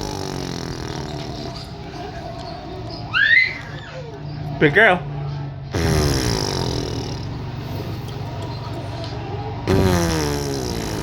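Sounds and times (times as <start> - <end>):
baby blowing raspberries: 0.0 - 2.0, 5.8 - 8.7, 9.7 - 11.0.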